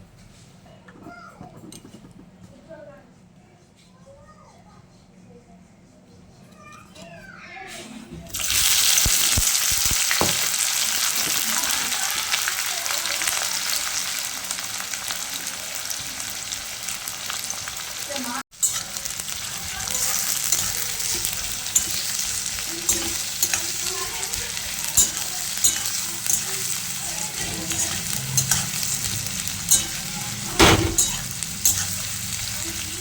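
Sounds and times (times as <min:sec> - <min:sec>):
food sizzling in hot oil: 0:08.3 - 0:33.0
spatula scraping pan: 0:18.6 - 0:33.0.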